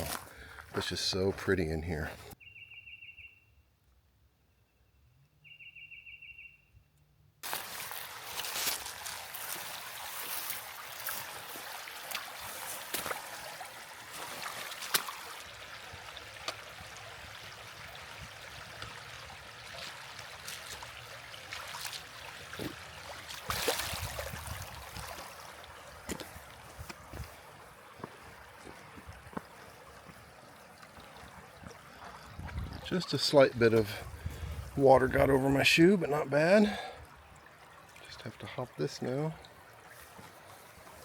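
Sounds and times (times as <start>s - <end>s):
footsteps on wet stones: 0.0s - 1.5s, 7.4s - 15.5s, 19.6s - 34.7s, 39.9s - 41.0s
creek rushing over rocks: 7.4s - 41.0s.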